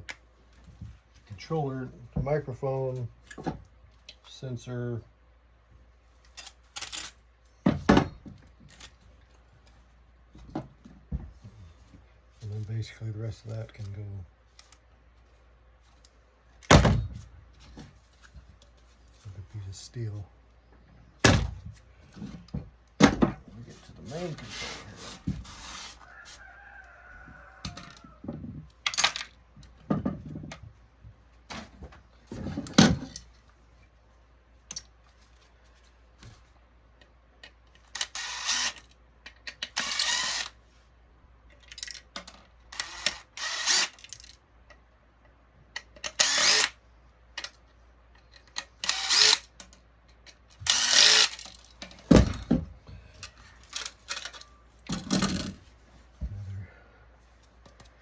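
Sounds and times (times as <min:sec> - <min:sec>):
metal parts clinking and knocking: 0:06.2 - 0:07.2, 0:28.8 - 0:29.4, 0:41.5 - 0:42.5, 0:53.2 - 0:55.6
tool noise bursts: 0:42.8 - 0:44.1, 0:46.1 - 0:46.8, 0:48.8 - 0:49.4, 0:50.6 - 0:51.6.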